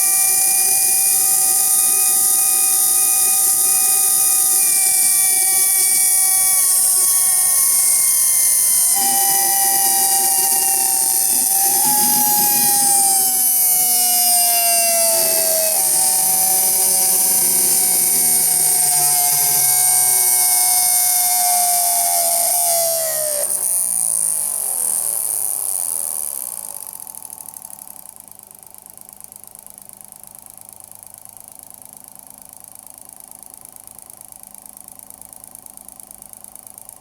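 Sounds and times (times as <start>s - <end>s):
high hiss: 0.0s - 27.0s
electric motor howling and whining: 0.0s - 27.1s.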